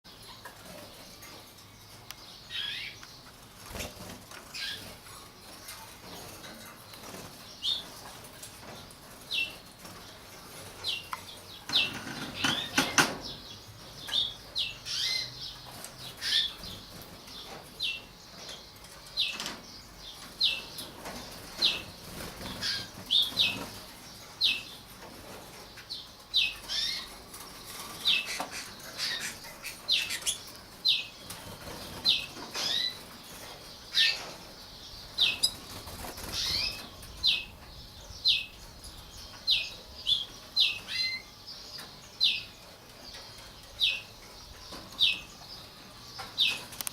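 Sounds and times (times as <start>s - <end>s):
wings flapping and rustling: 3.4s - 11.1s, 20.2s - 24.0s, 31.2s - 34.5s, 35.3s - 37.6s.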